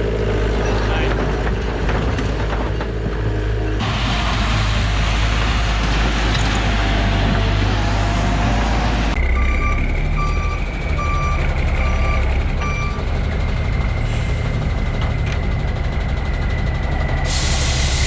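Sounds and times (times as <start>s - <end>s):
diesel engine running: 0.0s - 18.0s
reversing alarm beeps: 9.2s - 13.8s.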